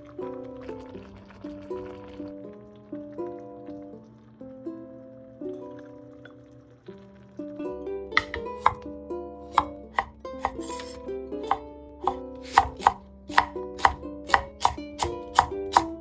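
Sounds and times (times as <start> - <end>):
light background music: 0.0 - 16.0
knife chopping on cutting board: 8.2 - 8.8, 9.5 - 16.0.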